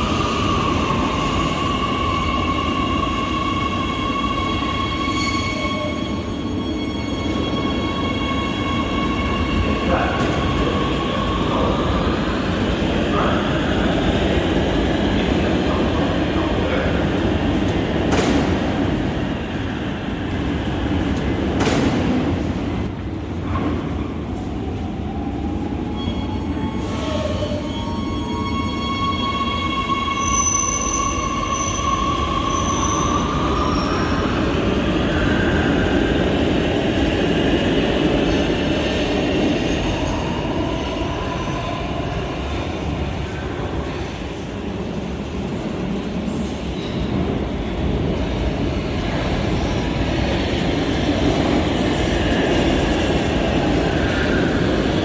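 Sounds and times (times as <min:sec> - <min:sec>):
train rumbling on rails: 0:00.0 - 0:55.0
rail clacks: 0:16.4 - 0:19.3, 0:20.3 - 0:23.8.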